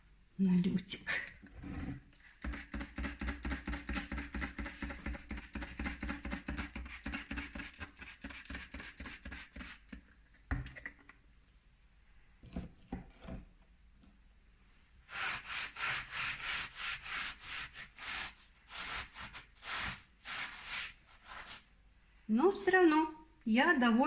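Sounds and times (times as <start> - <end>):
rag scrubbing brick: 2.2 - 10.0.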